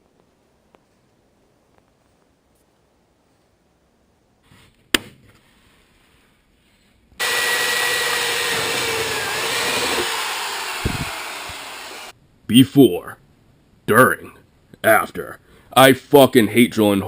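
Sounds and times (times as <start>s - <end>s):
electric drill drilling steel: 7.2s - 12.1s.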